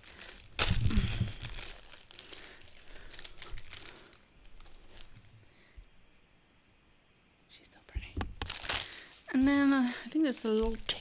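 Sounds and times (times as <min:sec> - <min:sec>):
plastic packaging crinkling: 0:00.0 - 0:05.7, 0:08.3 - 0:11.0.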